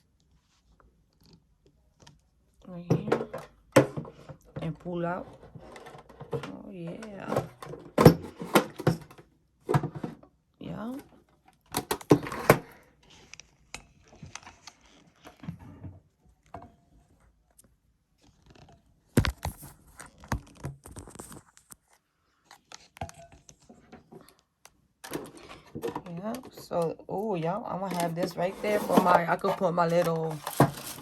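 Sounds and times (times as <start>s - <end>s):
drawer sliding and clunking: 5.3s - 10.3s, 11.8s - 12.7s, 27.9s - 31.0s.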